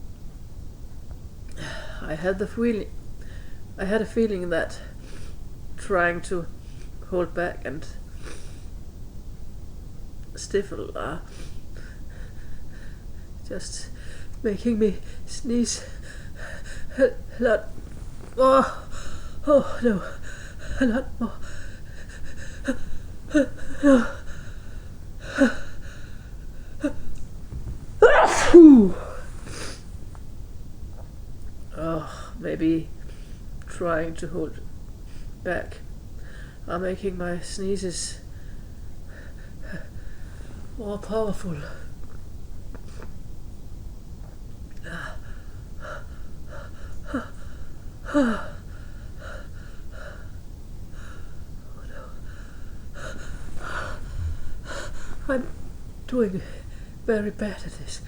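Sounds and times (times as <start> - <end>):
loud sneeze: 28.0 - 29.2
pre-sneeze gasps: 28.0 - 29.7.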